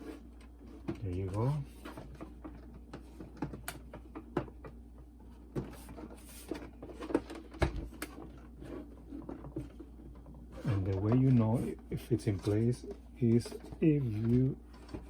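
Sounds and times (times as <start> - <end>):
plastic parts clicking and knocking: 0.7 - 5.0, 5.6 - 8.5.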